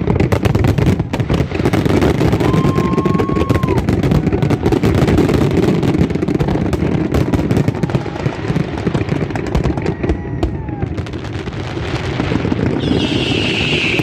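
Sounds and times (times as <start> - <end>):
fireworks crackling and booming: 0.0 - 14.0
firework whistles gliding down: 2.2 - 4.6, 12.6 - 14.0.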